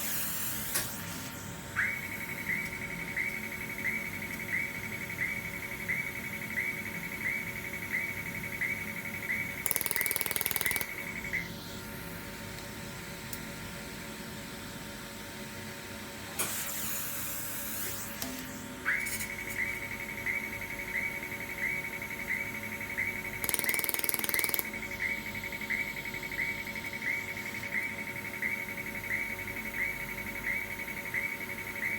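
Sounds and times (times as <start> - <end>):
laser welder crackling pulses: 9.6 - 11.9, 23.4 - 24.8
steady high tone with chirps: 18.8 - 31.9.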